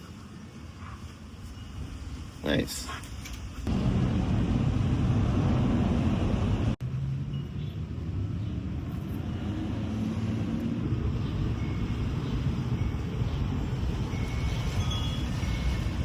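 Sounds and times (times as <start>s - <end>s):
vehicle engine rumbling: 3.4s - 16.0s.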